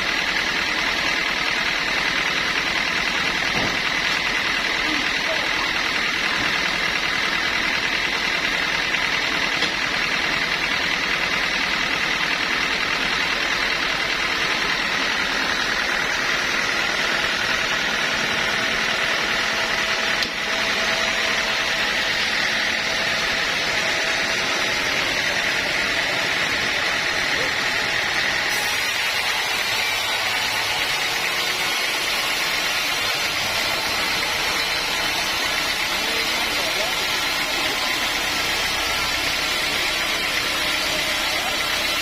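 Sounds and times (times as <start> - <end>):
sawmill machinery running: 0.0 - 42.0.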